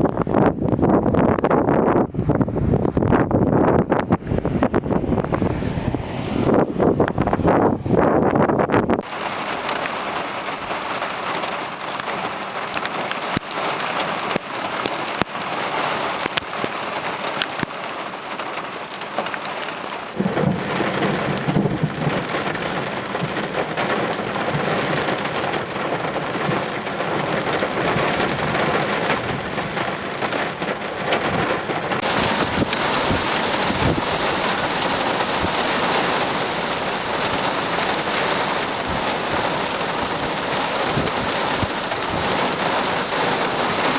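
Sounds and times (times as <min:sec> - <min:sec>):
heavy rain pouring: 0:09.0 - 0:43.9.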